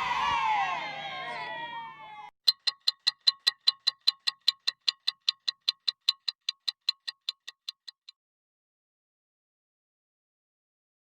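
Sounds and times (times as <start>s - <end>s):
fast clock-like ticking: 2.4s - 8.1s.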